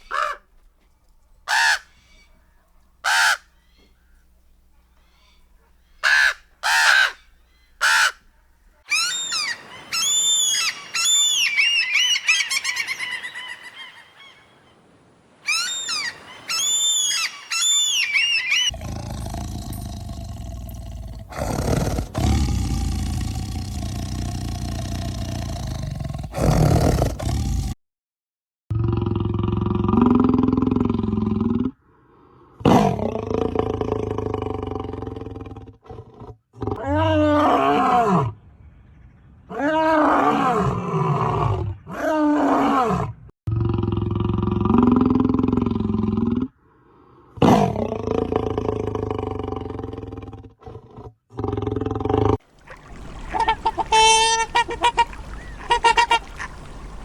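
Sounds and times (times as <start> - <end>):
harsh bird calls: 0.0 - 0.5, 1.5 - 4.3, 4.9 - 14.8, 15.4 - 18.8, 53.0 - 57.0
quick repeated bird calls: 0.0 - 0.5, 3.0 - 4.2, 5.0 - 8.2
loud low animal growl: 18.7 - 27.8, 28.7 - 31.8, 32.6 - 38.5, 39.5 - 46.6, 47.4 - 52.4.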